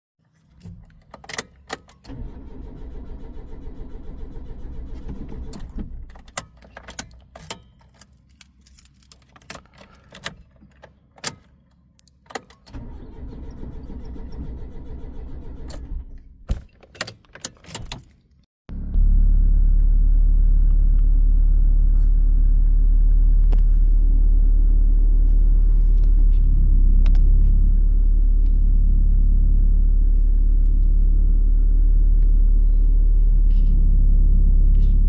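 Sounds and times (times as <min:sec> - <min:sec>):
engine cranking by starter: 0:02.0 - 0:06.3, 0:12.7 - 0:16.2
keys jangling in ignition: 0:06.1 - 0:12.7, 0:16.9 - 0:18.4.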